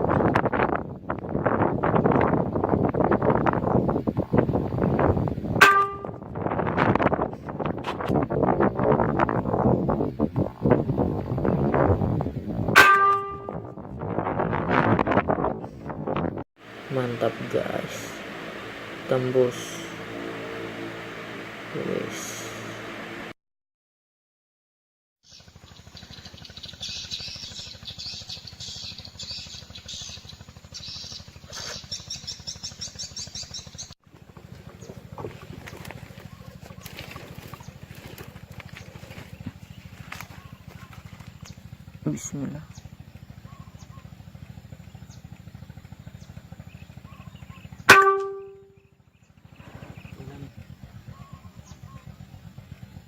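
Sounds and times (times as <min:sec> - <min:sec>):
steady low hum: 0:00.0 - 0:23.4, 0:25.4 - 0:53.0
ringing tone: 0:47.9 - 0:48.8.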